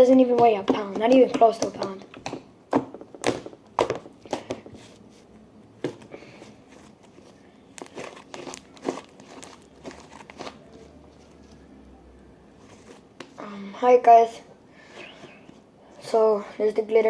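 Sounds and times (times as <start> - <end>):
slime crackling and popping: 7.7 - 10.6.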